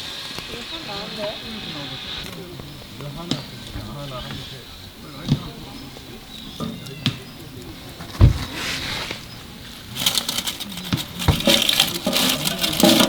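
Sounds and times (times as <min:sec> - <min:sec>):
firewood scraping and crackling: 0:00.0 - 0:13.0
firewood knocking and thumping: 0:05.2 - 0:13.0.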